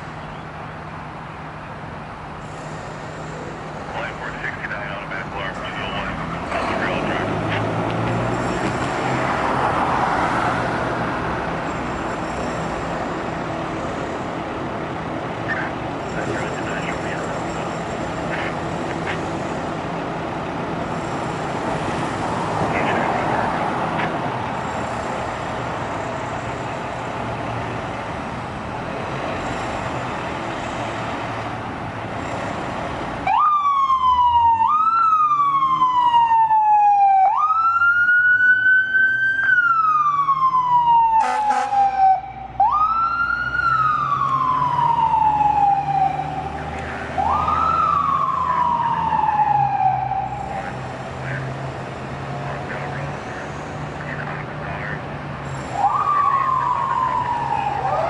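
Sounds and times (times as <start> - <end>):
mechanical siren wailing: 33.3 - 46.6, 47.2 - 50.6, 55.7 - 58.0
horn blast: 41.2 - 41.8
diesel engine running: 43.8 - 58.0.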